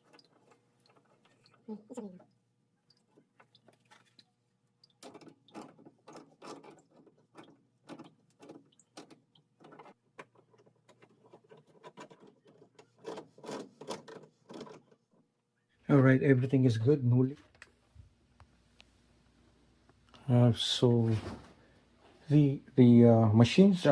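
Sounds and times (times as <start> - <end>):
scraping and clicking of plumbing: 0.0 - 15.4.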